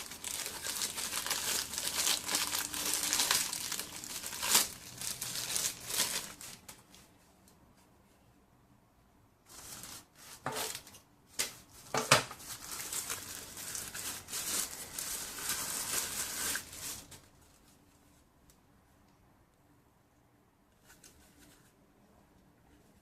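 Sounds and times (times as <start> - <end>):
plastic crinkling and rustling: 0.0 - 7.6, 9.5 - 18.2.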